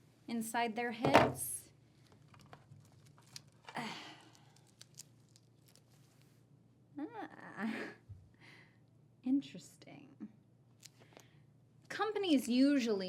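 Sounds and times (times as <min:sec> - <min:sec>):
rustling tearing noise: 0:02.0 - 0:06.4.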